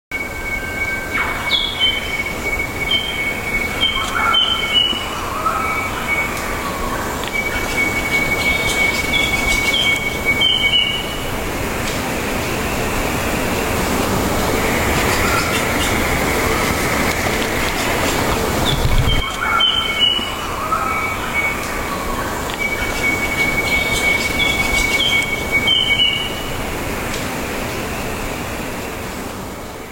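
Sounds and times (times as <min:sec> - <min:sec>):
whistled bird calls: 0:07.3 - 0:11.2, 0:22.6 - 0:26.5.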